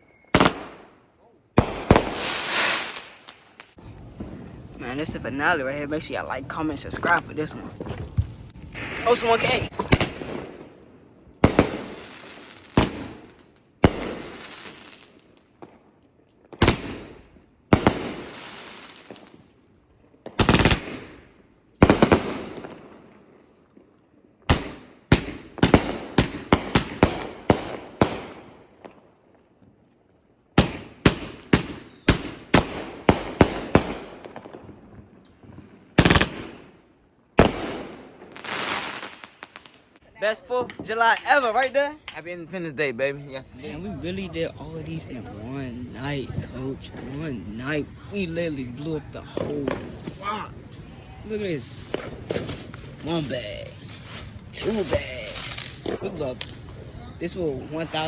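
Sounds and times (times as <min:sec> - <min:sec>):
fireworks bangs with echo: 0:00.3 - 0:01.0, 0:01.6 - 0:05.6, 0:08.2 - 0:19.5, 0:20.2 - 0:23.8, 0:24.4 - 0:29.0, 0:30.6 - 0:40.0, 0:46.0 - 0:50.2, 0:51.3 - 0:56.8.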